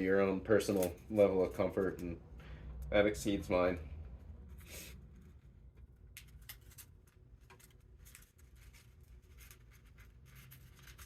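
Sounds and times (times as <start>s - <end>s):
hands handling small parts: 0.6s - 2.9s.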